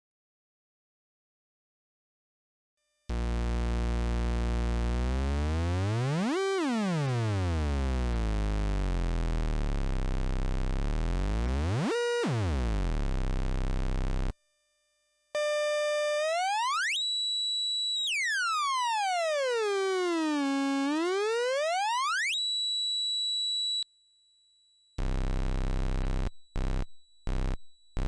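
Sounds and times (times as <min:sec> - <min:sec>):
higher steady buzzing tone: 0:03.1 - 0:06.2, 0:07.6 - 0:28.0
synthesizer buzzing drone: 0:03.1 - 0:14.3, 0:15.4 - 0:22.4, 0:25.0 - 0:28.0.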